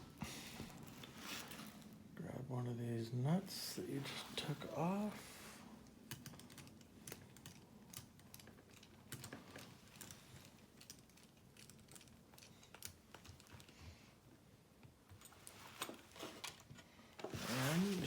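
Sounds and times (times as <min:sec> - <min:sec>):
small plastic and metal parts clicking: 0:06.1 - 0:13.8.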